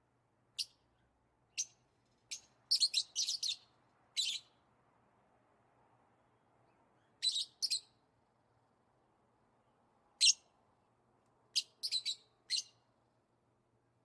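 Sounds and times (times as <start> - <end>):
lovebirds chirping: 0.6 - 4.6, 6.6 - 8.0, 10.2 - 10.5, 11.5 - 12.9.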